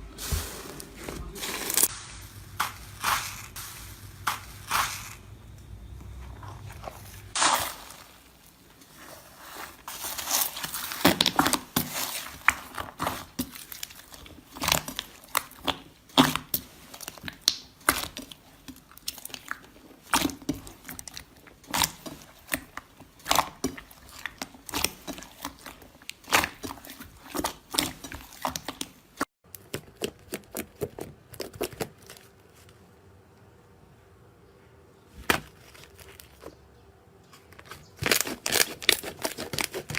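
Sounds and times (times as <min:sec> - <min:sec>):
slime crackling and popping: 0:07.3 - 0:08.3, 0:09.9 - 0:29.0, 0:37.9 - 0:39.9.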